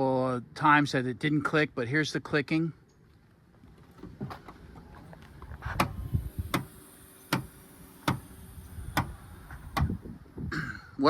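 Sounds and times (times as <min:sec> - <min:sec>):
lift mechanism hum: 0:03.6 - 0:10.5.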